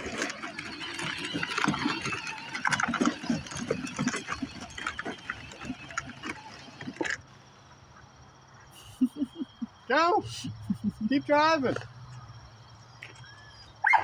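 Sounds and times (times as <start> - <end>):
toy gearbox and wheels rattling: 0.0 - 7.6.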